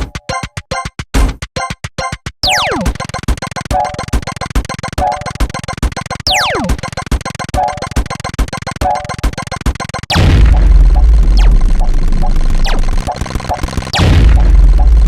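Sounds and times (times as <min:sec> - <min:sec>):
synthesizer beats and chords: 0:10.1 - 0:15.0
synthesizer pitch swoop: 0:10.2 - 0:13.2.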